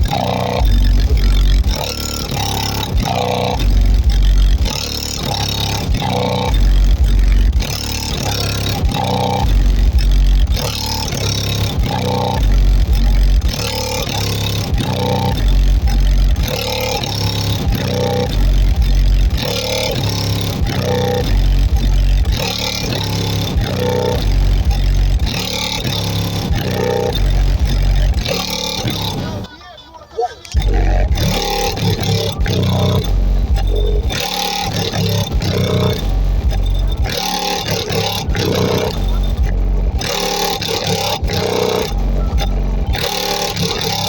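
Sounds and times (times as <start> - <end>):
hip-hop beat with deep bass: 0.0 - 44.0.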